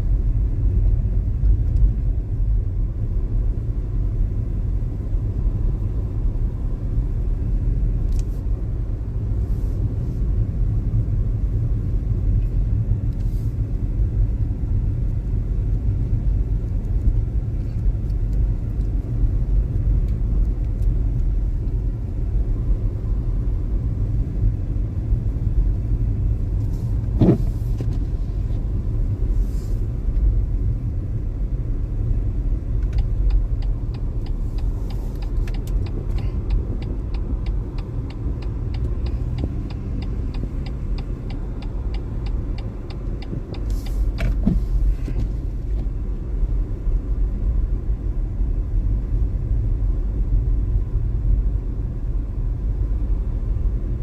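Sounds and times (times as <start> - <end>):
car engine and tyres rumbling: 0.0 - 54.0
regular ticking: 32.8 - 44.2.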